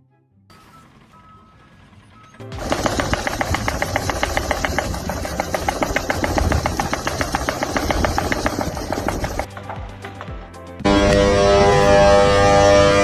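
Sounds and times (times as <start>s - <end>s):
machine hammering rapidly: 2.5s - 12.1s.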